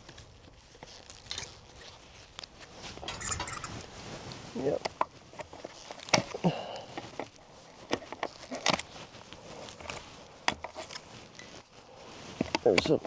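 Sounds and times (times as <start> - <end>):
handling clicks and knocks: 2.4 - 11.6, 12.3 - 13.0
footsteps crunching: 2.5 - 10.3.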